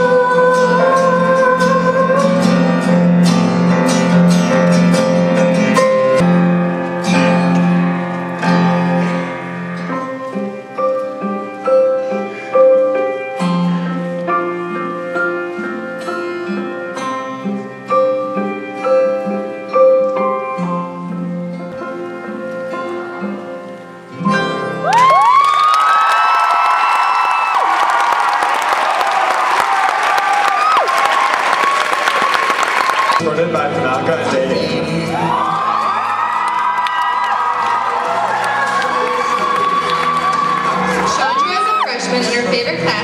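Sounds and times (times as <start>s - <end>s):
plucked guitar-like notes: 0.0s - 25.0s.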